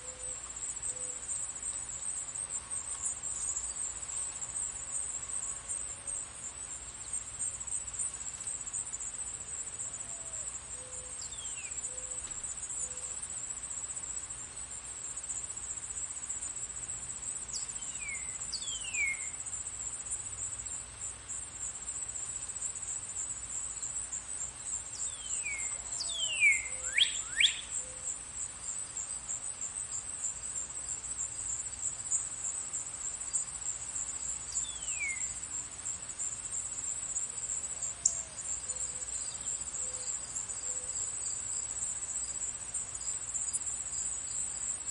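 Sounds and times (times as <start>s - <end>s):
crickets chirping: 0.0s - 44.9s
birds whistling downward: 17.8s - 19.4s, 25.1s - 27.7s, 34.6s - 35.4s.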